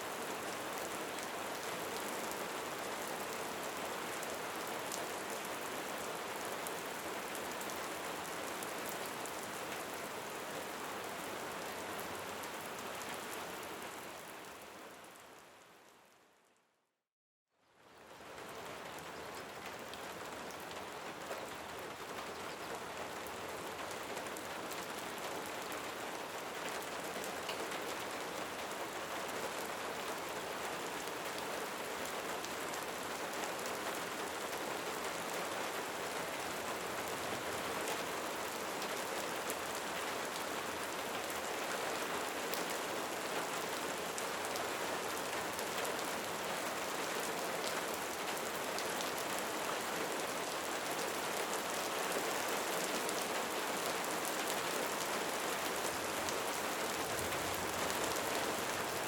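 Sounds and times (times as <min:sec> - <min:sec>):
steady rain hiss: 0:18.0 - 0:59.0.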